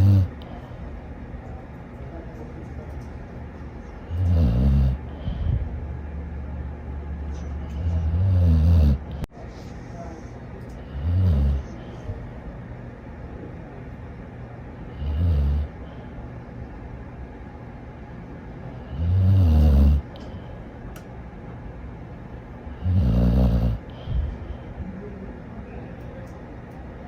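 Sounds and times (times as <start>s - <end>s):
dog snoring: 0.0s - 0.4s, 4.0s - 5.6s, 7.6s - 9.3s, 10.8s - 11.9s, 14.9s - 15.8s, 18.8s - 20.2s, 22.7s - 24.3s.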